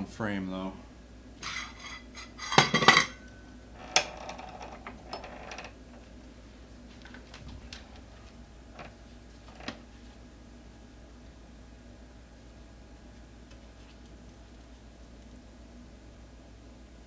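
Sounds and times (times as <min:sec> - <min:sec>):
metal hand tools clattering: 0:01.4 - 0:03.3.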